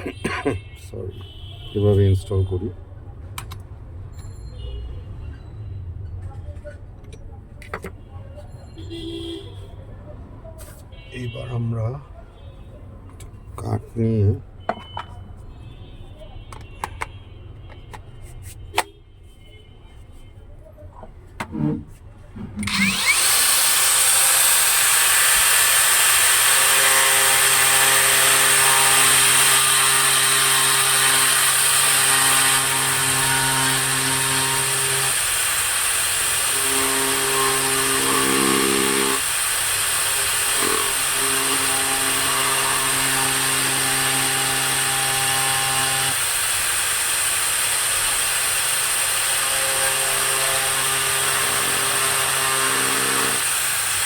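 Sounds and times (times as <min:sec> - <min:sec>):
blade cutting into wood: 0:22.6 - 0:54.0
power tool whining: 0:22.6 - 0:54.0.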